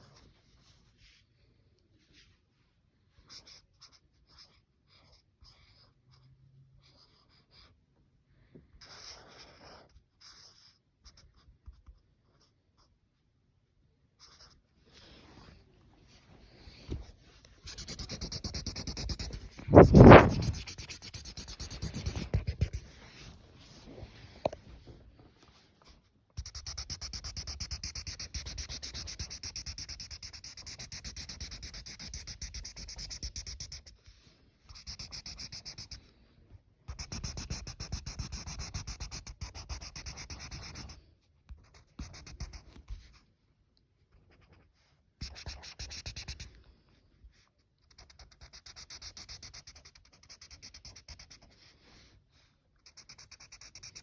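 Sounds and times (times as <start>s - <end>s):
drawing tool scratching paper: 17.6s - 23.2s, 26.4s - 34.0s, 34.7s - 36.1s, 36.9s - 41.0s, 41.6s - 43.2s, 45.2s - 46.5s, 47.8s - 51.6s, 52.8s - 54.0s.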